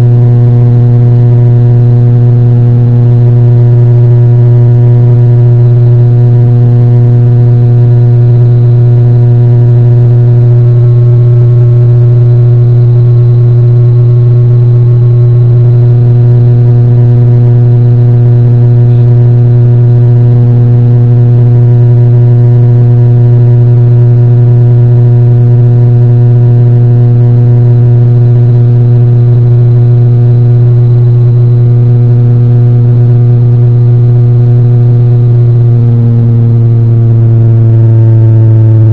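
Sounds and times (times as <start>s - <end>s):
drone propellers humming: 0.0s - 22.0s, 34.5s - 38.9s.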